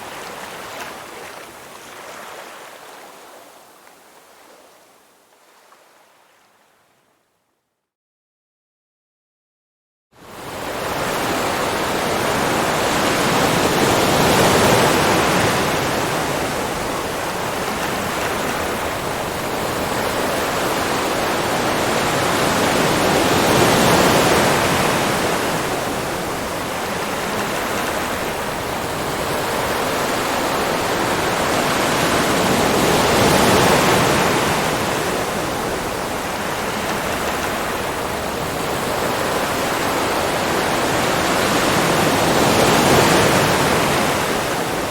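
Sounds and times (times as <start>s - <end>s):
ocean waves washing in: 10.3s - 44.9s.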